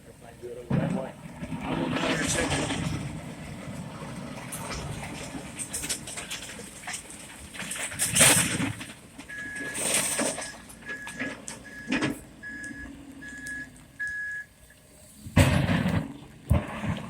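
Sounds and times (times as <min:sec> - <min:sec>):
rustling noise: 0:01.5 - 0:12.7
vehicle backup alarm beeping: 0:09.3 - 0:14.6.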